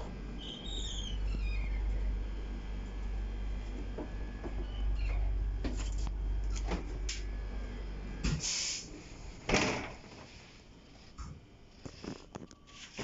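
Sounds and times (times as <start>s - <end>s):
compressed air hisses: 8.4s - 8.9s.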